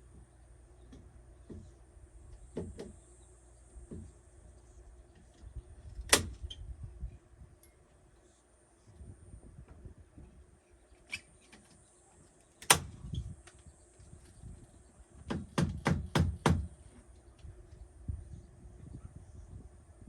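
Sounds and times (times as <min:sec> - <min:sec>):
knocks on wooden door: 0:15.2 - 0:16.7.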